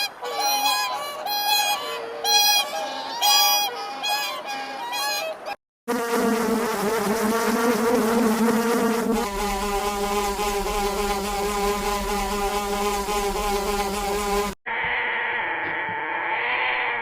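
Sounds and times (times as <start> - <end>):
flying insect buzzing: 5.9 - 14.6.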